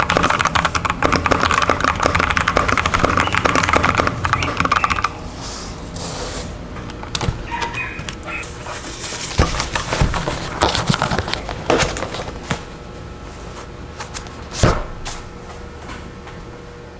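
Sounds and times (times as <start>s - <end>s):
mechanical keyboard keys clicking: 0.0s - 5.2s.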